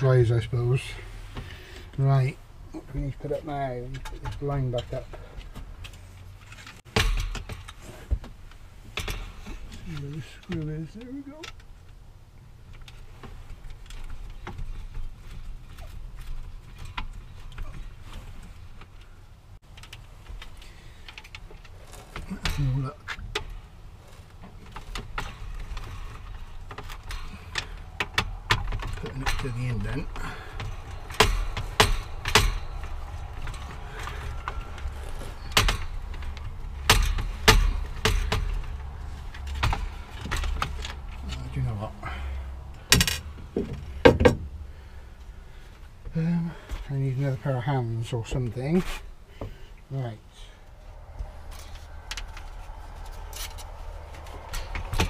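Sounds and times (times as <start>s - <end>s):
light clicks and knocks of hand work: 12.7s - 44.5s, 50.7s - 55.0s
panel creaking: 19.7s - 44.8s.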